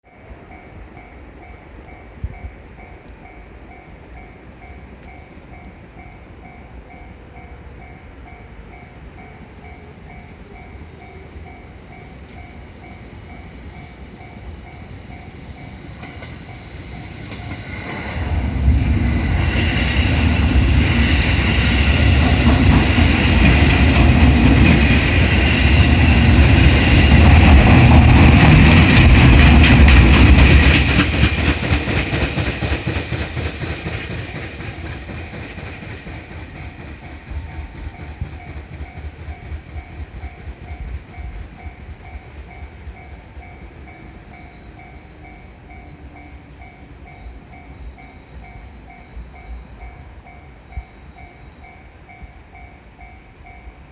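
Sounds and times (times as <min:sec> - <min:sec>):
crossing warning bell ringing: 0:00.1 - 0:18.4, 0:20.5 - 0:53.9
train wheels clattering: 0:09.6 - 0:50.0.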